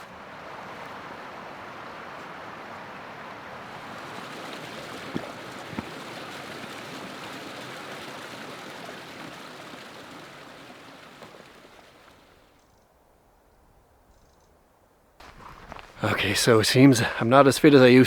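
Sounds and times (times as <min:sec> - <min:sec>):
river flowing over rocks: 0:00.0 - 0:12.5.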